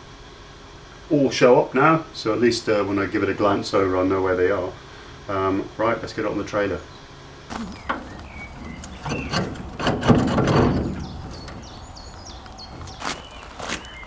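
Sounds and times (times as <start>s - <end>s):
birds chirping: 6.7s - 14.0s
sharp knocks: 7.5s - 13.3s.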